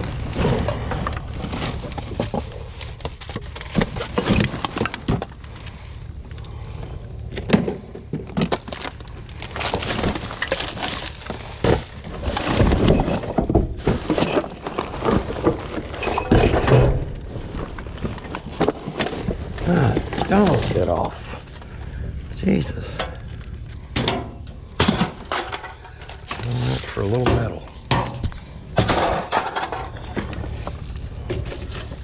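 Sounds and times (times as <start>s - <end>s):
junk clattering: 0.0s - 5.8s, 7.2s - 22.2s, 22.8s - 32.0s
plastic cracking: 0.0s - 6.5s, 7.4s - 21.9s.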